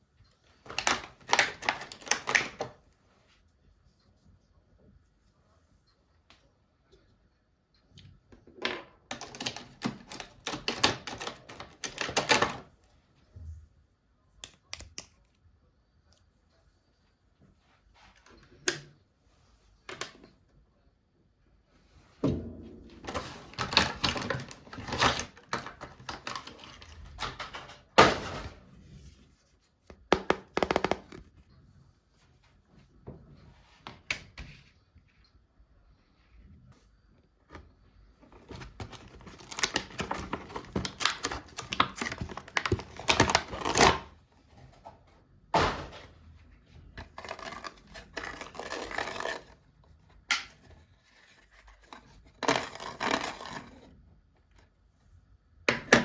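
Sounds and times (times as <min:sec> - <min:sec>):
plastic packaging handled: 0:38.3 - 0:44.2.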